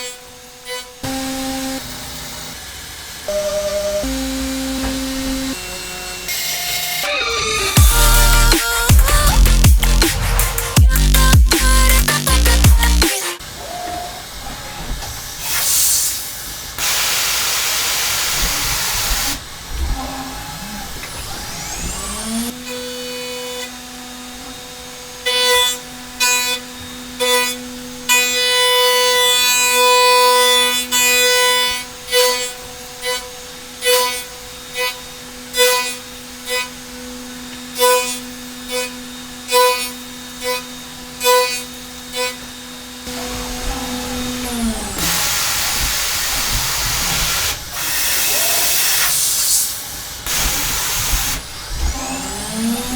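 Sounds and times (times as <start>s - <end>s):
mill cutting aluminium: 0.0s - 13.6s, 14.2s - 52.9s
spindle whine: 3.2s - 13.1s
loud hiss: 6.5s - 13.4s, 15.2s - 19.5s, 45.0s - 51.4s.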